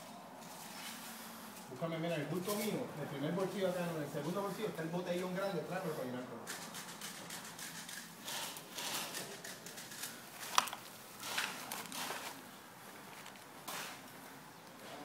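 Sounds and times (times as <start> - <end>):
rustling and handling noises: 0.0 - 15.0.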